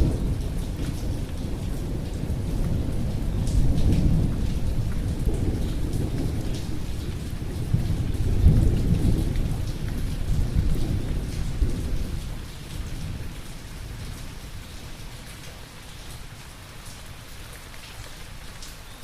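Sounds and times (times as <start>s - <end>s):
thunder rumbling: 0.0s - 13.8s
steady rain: 0.0s - 19.0s.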